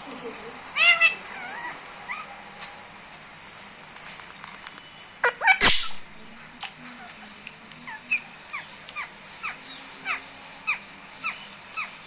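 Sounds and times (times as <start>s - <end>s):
parrot bark-like calls: 0.8s - 2.8s, 5.2s - 6.1s, 7.8s - 12.0s
parrot whistled chirps: 5.2s - 6.0s.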